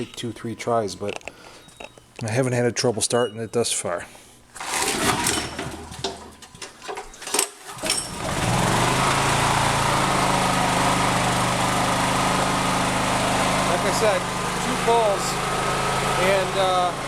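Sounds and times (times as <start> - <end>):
starter cord pulls: 0.0 - 2.3, 4.6 - 9.9
generator engine running: 4.6 - 7.0, 7.6 - 17.0.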